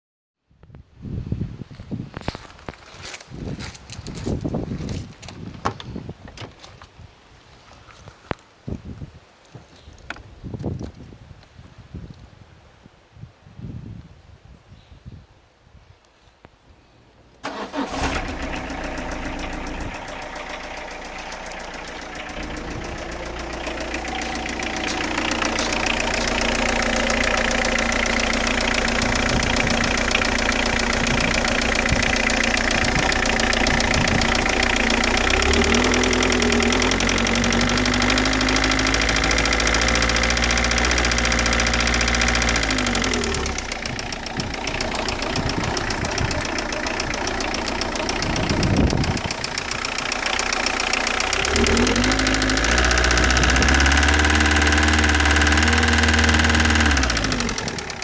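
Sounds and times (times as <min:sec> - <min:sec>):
car engine with clacking knock: 0:17.5 - 0:58.0.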